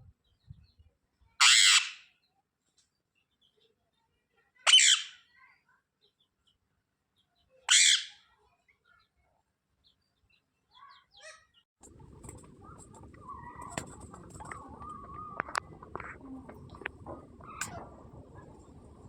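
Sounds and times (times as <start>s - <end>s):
parrot squawking: 4.7s - 5.1s, 7.7s - 8.1s
clicks: 11.8s - 19.0s
steady background hum: 11.8s - 19.0s.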